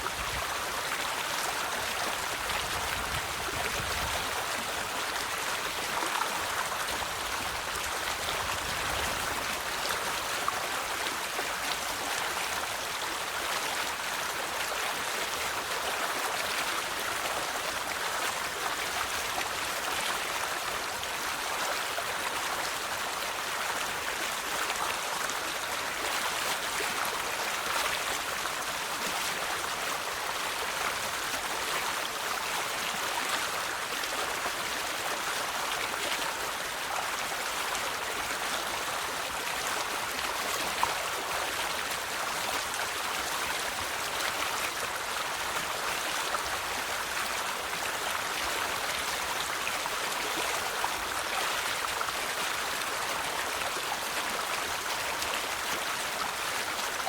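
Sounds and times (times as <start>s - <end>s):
river water flowing over stones: 0.0s - 57.0s.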